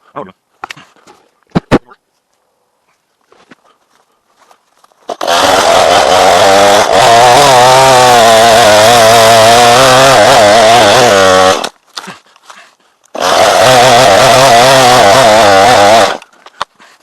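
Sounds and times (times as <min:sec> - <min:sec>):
chainsaw running at high revs: 0:05.1 - 0:11.7, 0:13.1 - 0:16.3.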